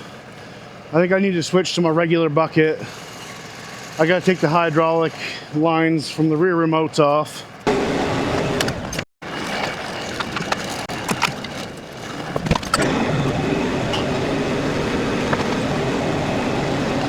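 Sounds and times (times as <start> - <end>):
metal parts clicking and knocking: 9.9 - 12.8.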